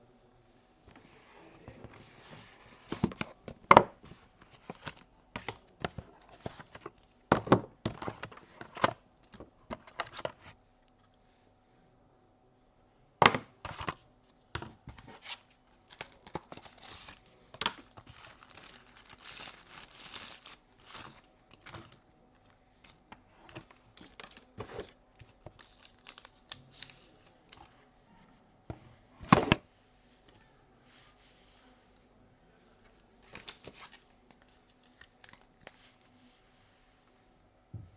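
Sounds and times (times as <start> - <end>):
plastic and paper crinkling: 1.7 - 10.6, 14.6 - 27.9, 33.2 - 36.1
box clicks and knocks: 7.3 - 9.0.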